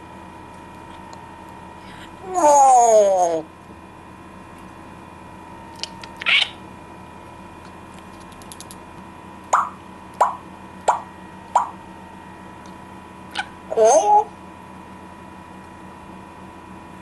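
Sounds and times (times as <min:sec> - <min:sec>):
parrot popping mouth sounds: 0:09.6 - 0:11.8.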